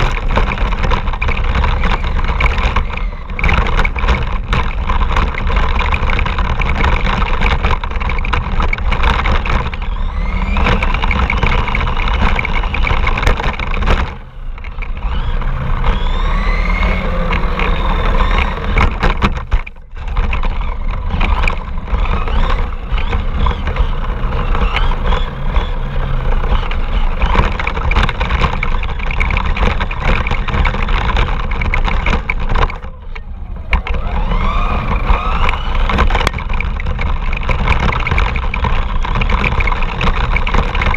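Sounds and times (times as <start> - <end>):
rc car rumble and rattle: 0.0 - 40.9
electric motor whine: 9.0 - 40.9.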